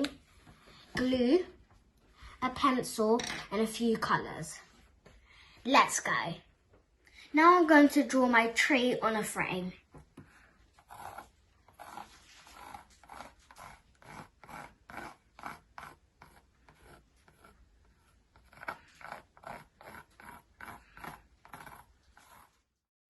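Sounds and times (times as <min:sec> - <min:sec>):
pencil scratching on paper: 0:10.3 - 0:22.8.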